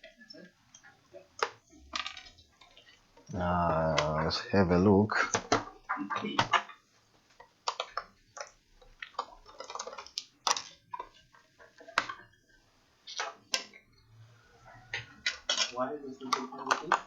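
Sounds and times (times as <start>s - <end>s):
small tools being handled: 0.0s - 4.2s, 7.4s - 12.4s, 13.0s - 13.9s, 14.6s - 17.0s.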